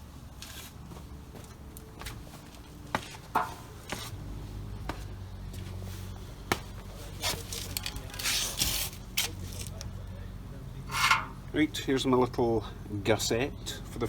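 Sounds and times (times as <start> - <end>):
steel plates clinking on workbench: 10.9 - 11.5.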